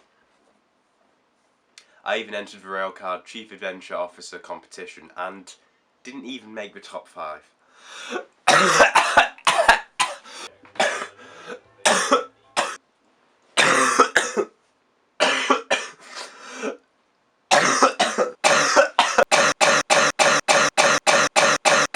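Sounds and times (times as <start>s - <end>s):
person coughing: 8.1s - 12.8s, 13.6s - 14.5s, 15.2s - 16.8s, 17.5s - 21.9s.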